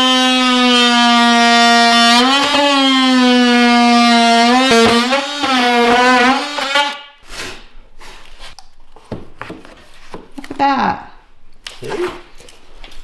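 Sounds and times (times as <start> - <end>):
power saw buzzing: 0.0 - 7.1.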